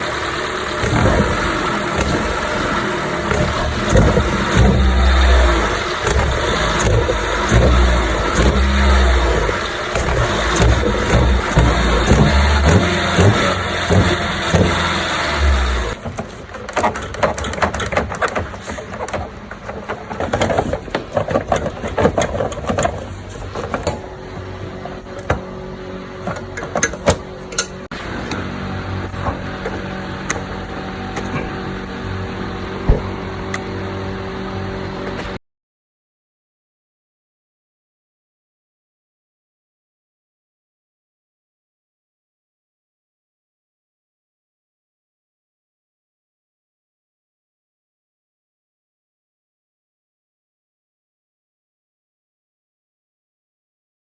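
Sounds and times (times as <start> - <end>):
car engine revving: 0.0 - 16.0
engine pops and rattle: 0.0 - 24.1.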